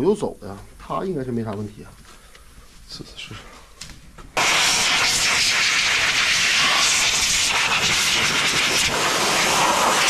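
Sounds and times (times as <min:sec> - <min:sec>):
boring machine rushing hiss: 0:04.4 - 0:10.0.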